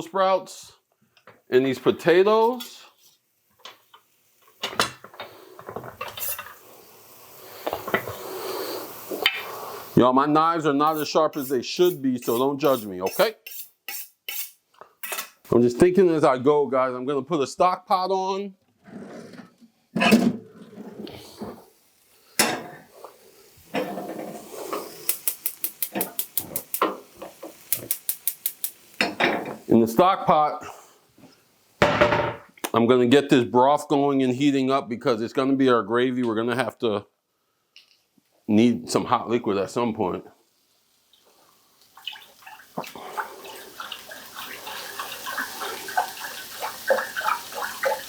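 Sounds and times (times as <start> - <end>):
liquid pouring into a pot: 41.2 - 48.0.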